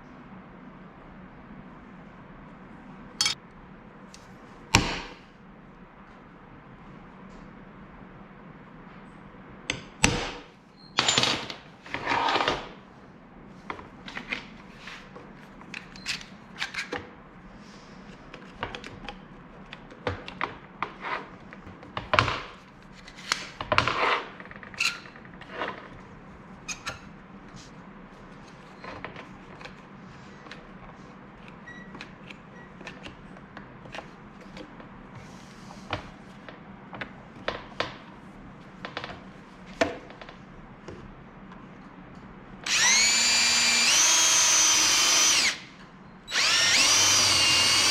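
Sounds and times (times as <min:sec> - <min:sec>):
tools clattering on workbench: 0:11.0 - 0:12.7.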